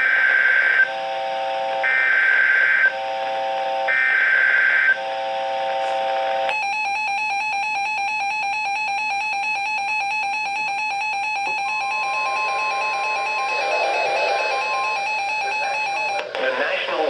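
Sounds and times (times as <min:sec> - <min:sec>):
pulsing electronic alarm tone: 0:06.5 - 0:16.2
higher steady tone: 0:11.0 - 0:16.2.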